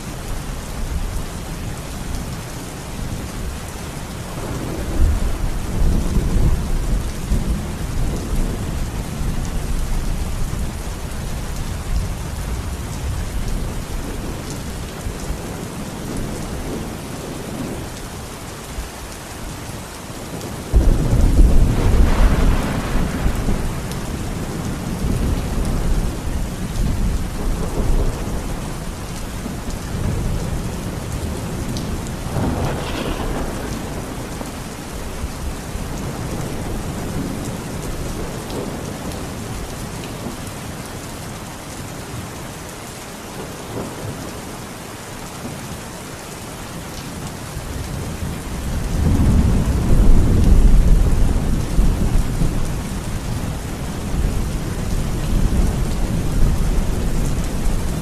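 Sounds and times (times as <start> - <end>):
heavy rain: 0.0 - 58.0
rolling thunder: 4.3 - 10.7, 20.4 - 39.1, 47.8 - 58.0
loud thunderclap: 20.7 - 26.1, 31.7 - 38.8.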